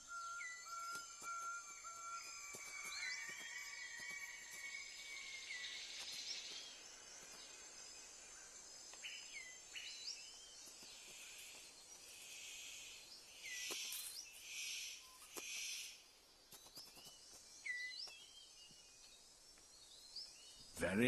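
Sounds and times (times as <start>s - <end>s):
whistled bird notes: 0.0s - 7.5s, 16.7s - 19.2s
high insect hum: 0.0s - 21.0s.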